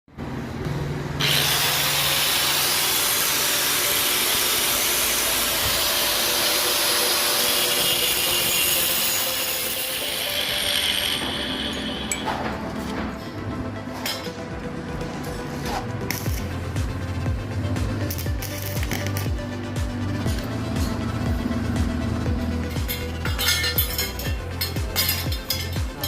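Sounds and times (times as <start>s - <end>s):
welding arc crackling: 1.2s - 12.2s, 18.0s - 19.5s.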